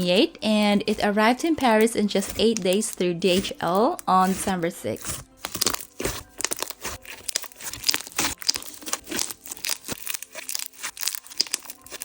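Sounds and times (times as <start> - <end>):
slime crackling and popping: 5.0 - 12.0.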